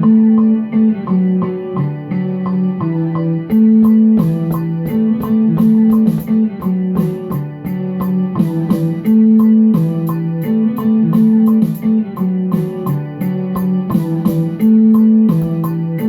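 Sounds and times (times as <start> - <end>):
plucked guitar-like melody loop: 0.0 - 16.0
crisp high hi-hat ticking: 3.5 - 16.0.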